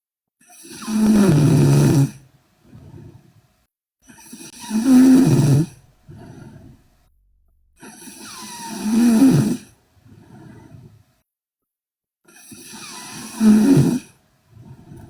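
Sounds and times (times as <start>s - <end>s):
woman snoring loudly: 0.7s - 2.2s, 4.4s - 5.8s, 12.6s - 14.1s.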